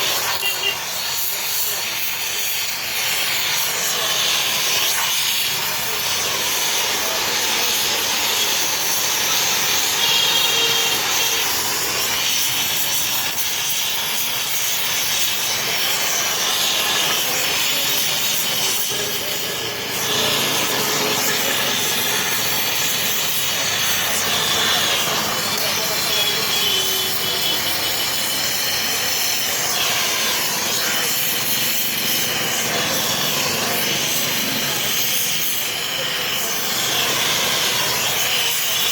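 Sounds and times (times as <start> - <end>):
welding hiss: 0.0 - 38.9.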